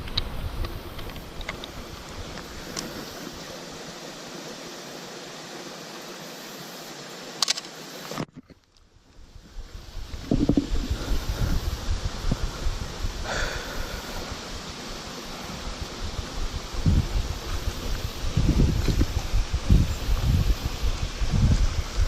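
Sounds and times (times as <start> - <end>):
sharp click: 7.4 - 8.4
falling water rushing: 9.7 - 22.0.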